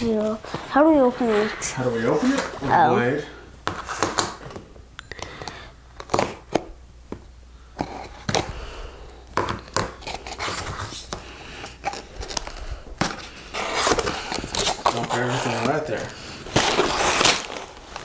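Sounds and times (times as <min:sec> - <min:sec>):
blade cutting cardboard box: 0:13.0 - 0:15.8, 0:16.5 - 0:17.6.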